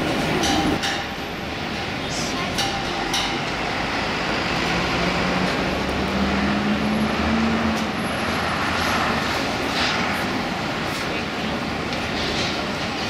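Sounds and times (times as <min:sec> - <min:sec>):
city street traffic: 0:00.0 - 0:13.0
heavy vehicle engine: 0:00.0 - 0:13.0.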